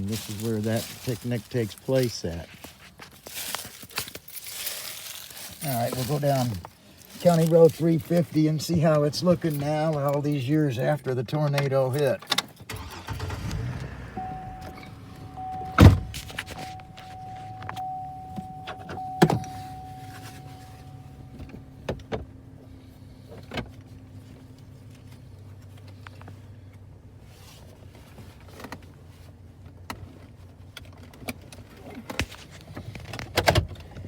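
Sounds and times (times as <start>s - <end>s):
low steady hum: 13.0s - 30.8s
car door slamming: 13.3s - 22.3s
steady electronic tone: 14.2s - 21.8s.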